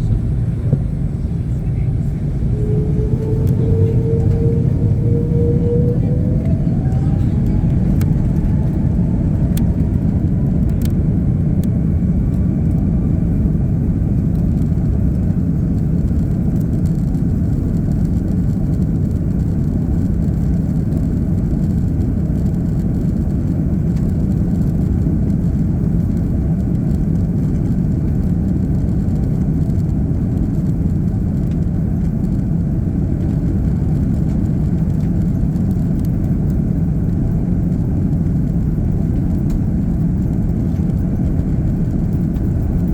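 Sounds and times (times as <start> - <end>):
thin rising whine: 0.0 - 14.6
airplane engines rumbling in cabin: 0.0 - 42.9.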